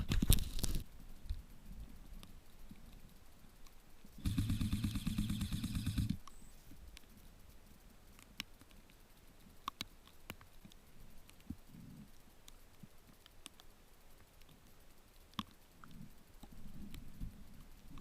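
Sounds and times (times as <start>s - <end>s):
faint clicks: 0.0s - 18.0s
airsoft rifle full-auto burst: 4.2s - 6.2s.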